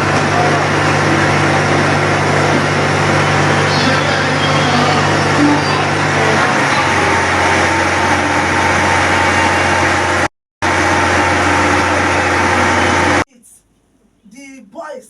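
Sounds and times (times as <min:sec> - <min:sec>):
engine running: 0:00.0 - 0:13.2
loud dense noise: 0:00.0 - 0:13.7
steady low hum: 0:00.0 - 0:14.8.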